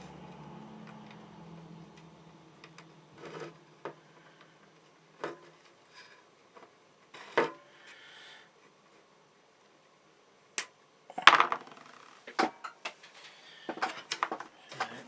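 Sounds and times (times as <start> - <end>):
faint low hum: 0.0 - 8.2.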